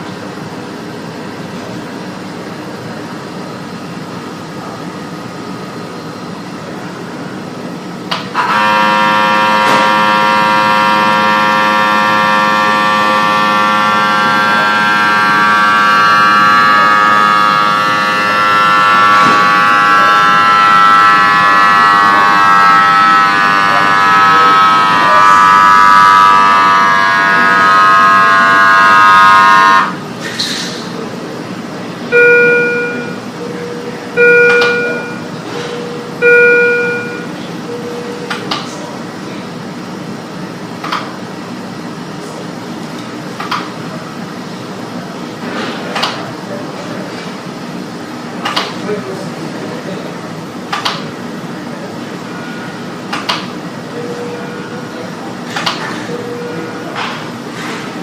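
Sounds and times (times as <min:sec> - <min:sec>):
low background hum: 0:00.0 - 0:58.0
horn-like alarm tone: 0:08.3 - 0:30.1, 0:32.1 - 0:39.0, 0:52.1 - 0:57.4.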